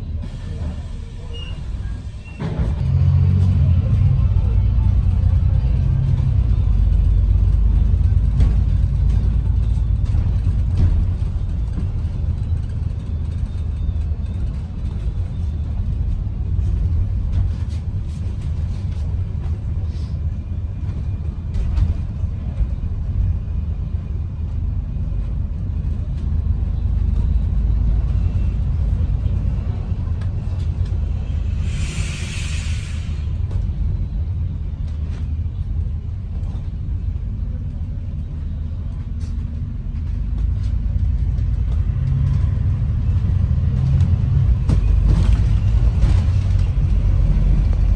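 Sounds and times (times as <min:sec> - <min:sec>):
bus engine and road rumble: 0:00.0 - 0:47.9
air hiss: 0:31.6 - 0:33.3.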